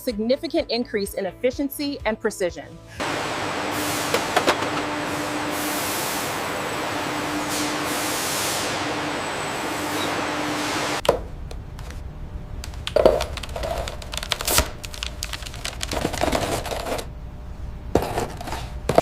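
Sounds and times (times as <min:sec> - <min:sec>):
steady hiss: 0:03.0 - 0:11.0.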